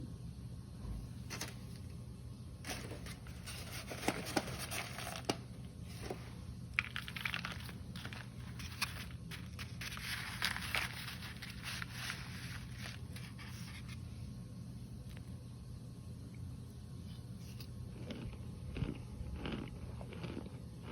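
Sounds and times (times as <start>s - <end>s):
cornstarch crunching and squeaking: 2.7s - 14.0s, 17.1s - 20.9s.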